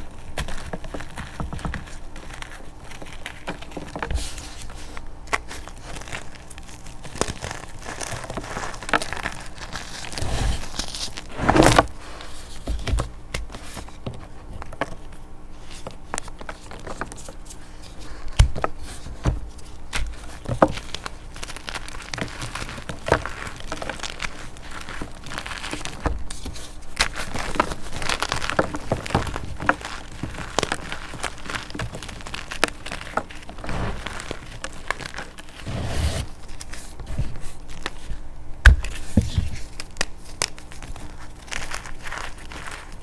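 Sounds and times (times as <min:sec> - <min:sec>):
chalk crunching: 0:16.5 - 0:38.2.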